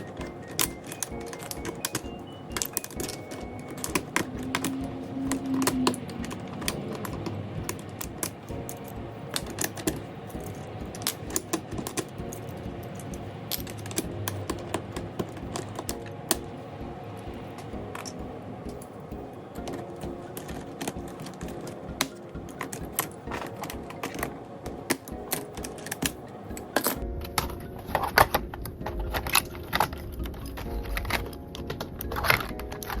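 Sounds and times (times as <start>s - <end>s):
mechanical keyboard clicking: 0.0s - 33.0s
soft background music: 0.0s - 33.0s.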